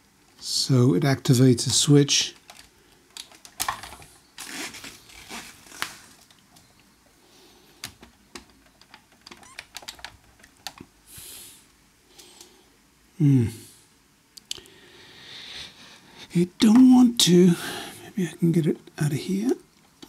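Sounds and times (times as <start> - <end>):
person humming: 13.2 - 13.8.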